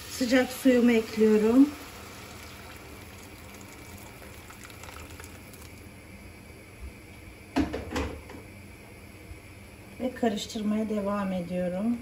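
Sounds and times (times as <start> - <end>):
liquid hissing and bubbling: 0.0 - 6.0.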